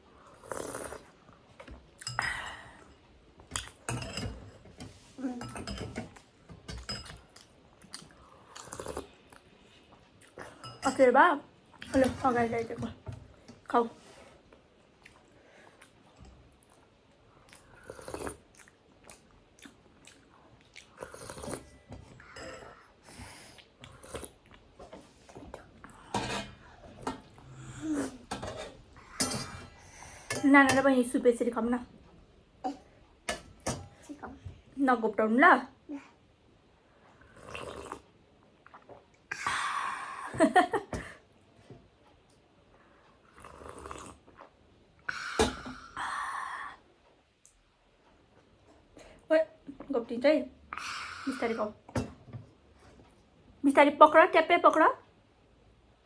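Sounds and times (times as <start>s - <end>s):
cutlery clinking against plates: 3.5s - 7.3s, 10.6s - 11.1s, 26.1s - 27.3s, 28.2s - 29.7s.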